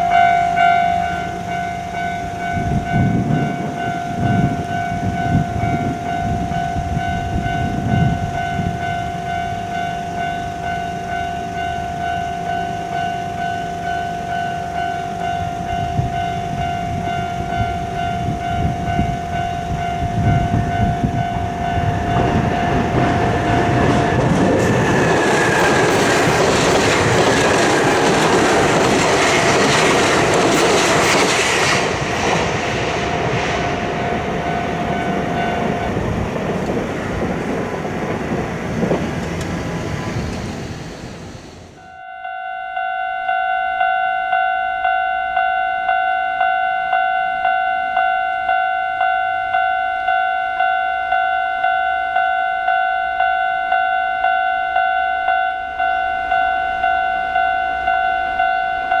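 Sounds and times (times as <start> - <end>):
level crossing bell clanging: 0.0 - 38.1
train passing over crossing: 0.0 - 59.0.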